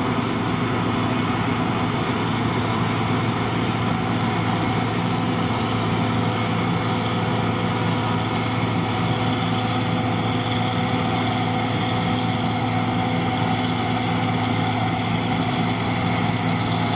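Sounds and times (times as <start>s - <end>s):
combine harvester engine drone: 0.0s - 16.9s
threshing machinery hiss and rattle: 0.0s - 16.9s.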